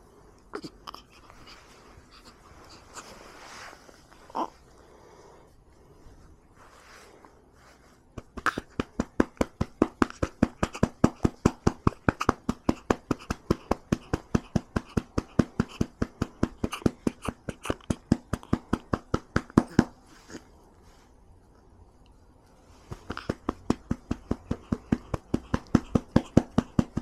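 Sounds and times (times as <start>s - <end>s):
hand patting baby's back: 8.1s - 20.0s, 22.9s - 27.0s.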